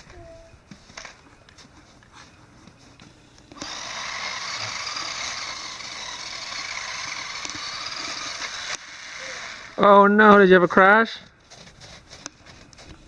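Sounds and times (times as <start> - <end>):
toy electric motor whirring: 3.5 - 9.8.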